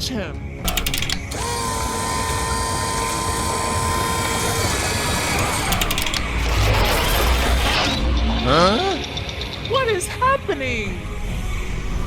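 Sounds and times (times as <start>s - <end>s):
rapid clicks: 0.7s - 8.1s
whining tone: 0.7s - 8.2s.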